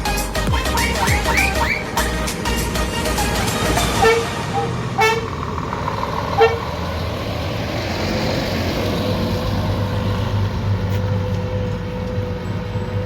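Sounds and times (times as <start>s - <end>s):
truck horn toots: 0.0s - 7.0s
truck engine driving away: 0.0s - 13.0s.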